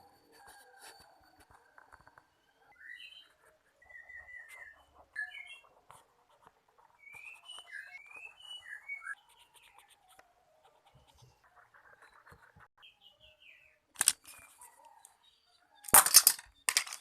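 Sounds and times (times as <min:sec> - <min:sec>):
bird chirping and whistling: 0:07.0 - 0:09.8.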